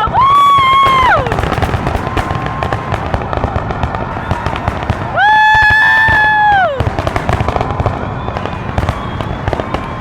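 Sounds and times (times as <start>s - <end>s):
fireworks crackling and popping: 0.0s - 10.0s
horn-like high tone: 4.2s - 7.6s, 8.3s - 10.0s.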